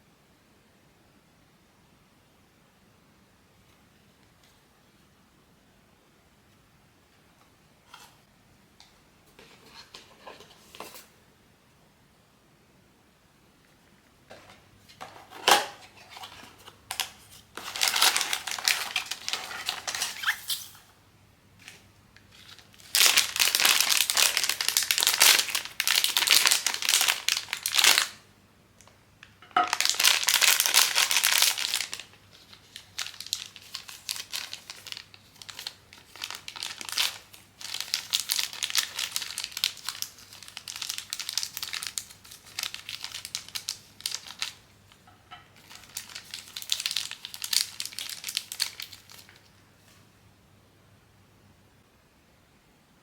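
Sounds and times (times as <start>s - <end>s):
plastic packaging crinkling and tearing: 15.2s - 20.8s, 21.7s - 28.2s, 29.6s - 44.7s, 45.6s - 49.5s.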